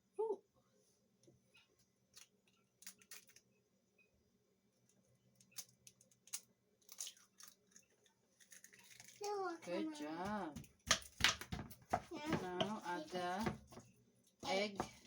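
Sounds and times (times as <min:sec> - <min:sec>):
egg shell taps and clicks: 0:10.5 - 0:12.0.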